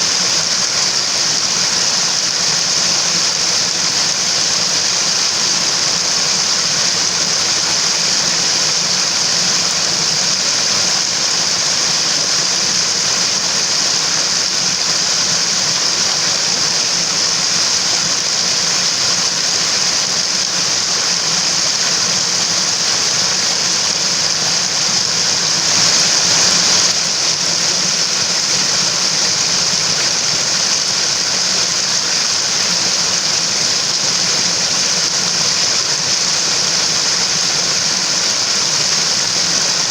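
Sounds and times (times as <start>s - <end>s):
stream water rushing: 12.4s - 39.9s.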